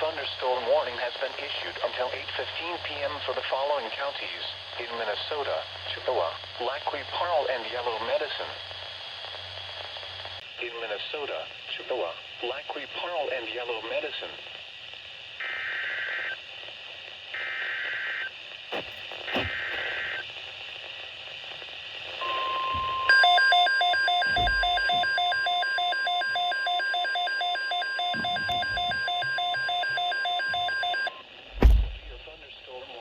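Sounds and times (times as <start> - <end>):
steady weather alert tone: 22.2 - 32.5.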